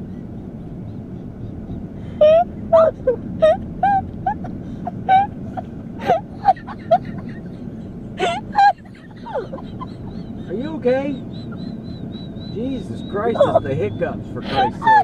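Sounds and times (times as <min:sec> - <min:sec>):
person whimpering: 0:14.4 - 0:15.0.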